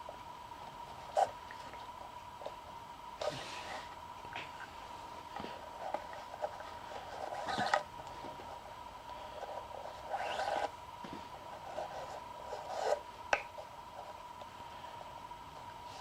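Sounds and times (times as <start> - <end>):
cord rustling and scraping: 5.3 - 8.7, 9.4 - 13.0.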